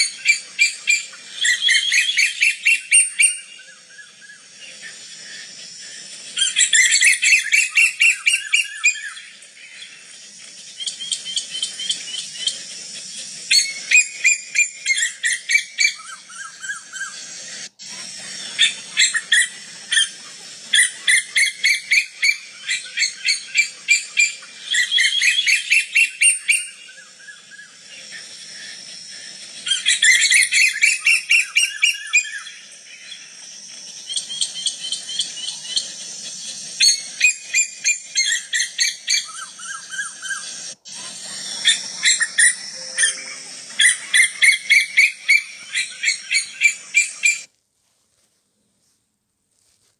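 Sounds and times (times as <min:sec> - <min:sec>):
faint high hiss: 0:26.3 - 0:49.9.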